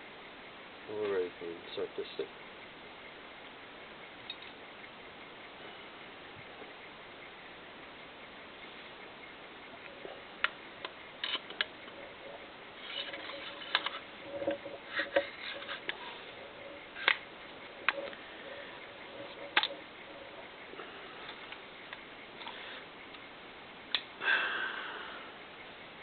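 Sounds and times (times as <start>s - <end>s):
rifle parts clicking and scraping: 11.2s - 11.7s, 12.8s - 16.2s.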